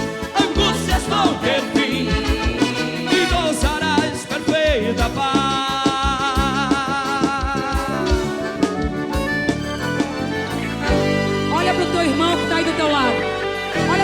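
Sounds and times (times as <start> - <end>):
kick drum beat: 0.0 - 4.0, 4.7 - 6.8, 7.4 - 11.2
person singing: 0.0 - 8.7
live band music: 0.0 - 14.0.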